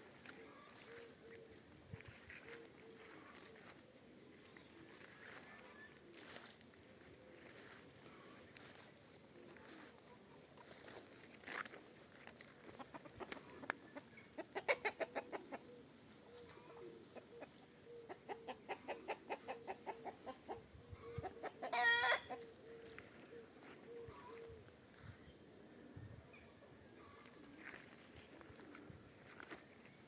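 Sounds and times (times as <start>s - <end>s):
chickens clucking: 0.0s - 24.6s, 25.8s - 30.0s
chicken squawk: 16.6s - 22.5s.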